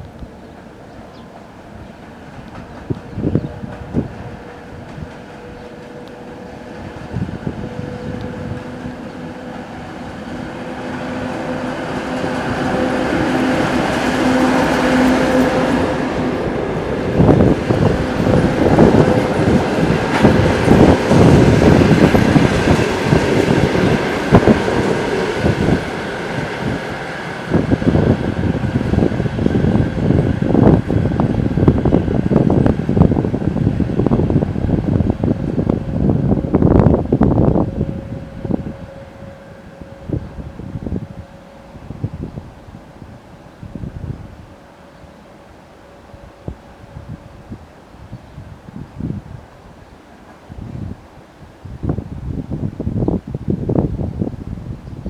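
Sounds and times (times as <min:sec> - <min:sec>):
diesel locomotive engine drone: 0:00.0 - 0:55.0
train wheels clacking over rail joints: 0:00.5 - 0:34.4.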